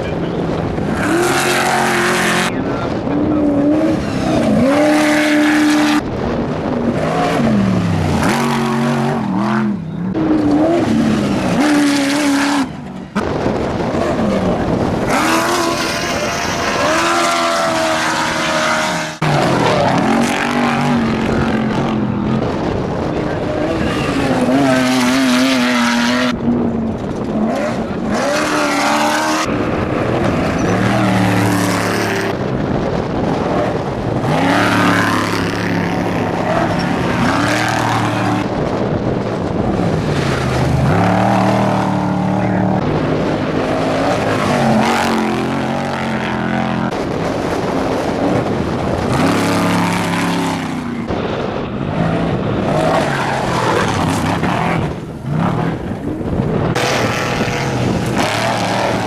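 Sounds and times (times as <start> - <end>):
truck engines revving hard: 0.0 - 59.0.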